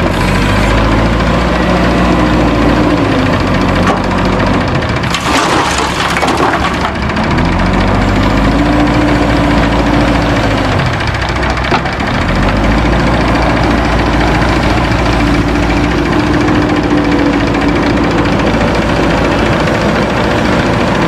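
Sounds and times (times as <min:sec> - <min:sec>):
diesel engine revving: 0:00.0 - 0:21.0
crackling clatter: 0:02.4 - 0:21.0.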